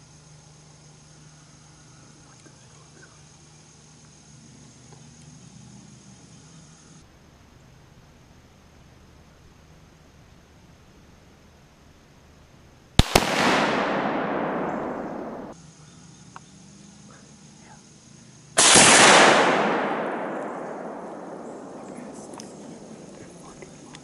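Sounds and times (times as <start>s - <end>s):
rifle cracks: 13.0s - 15.5s
gunshot boom echoing: 13.0s - 15.6s, 18.6s - 23.3s.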